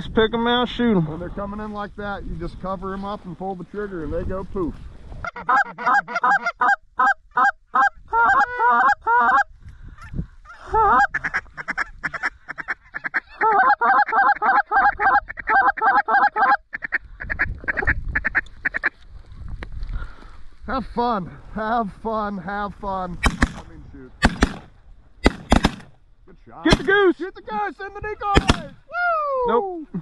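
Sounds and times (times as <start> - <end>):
geese honking and clucking: 5.2 - 19.0.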